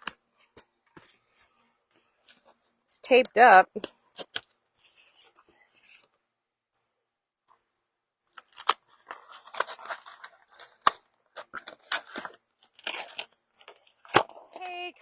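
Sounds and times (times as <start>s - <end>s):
packaging crinkling and tearing: 8.3s - 15.0s.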